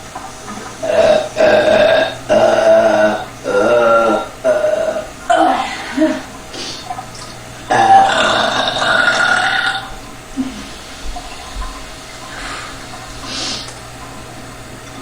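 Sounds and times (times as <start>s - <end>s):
person burping loudly: 0.8s - 6.2s, 7.7s - 9.9s.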